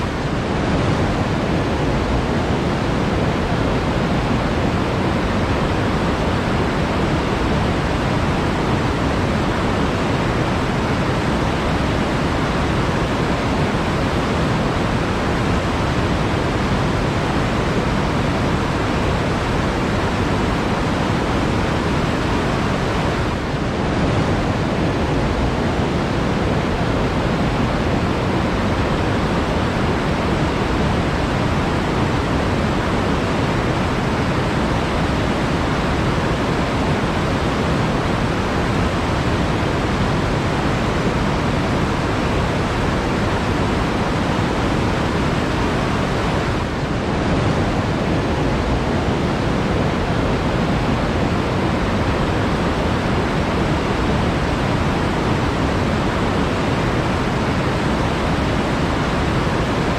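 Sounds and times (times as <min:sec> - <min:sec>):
flowing water rushing: 0:00.0 - 0:59.9.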